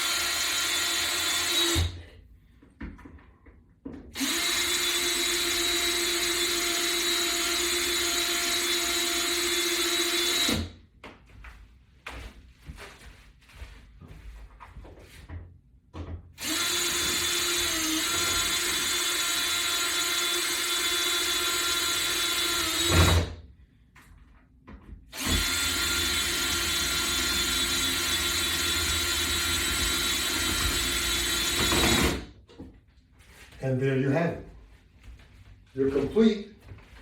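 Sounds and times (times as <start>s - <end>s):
power drill drilling into wood: 0.0s - 2.0s, 4.2s - 10.7s, 16.4s - 23.3s, 25.1s - 32.3s.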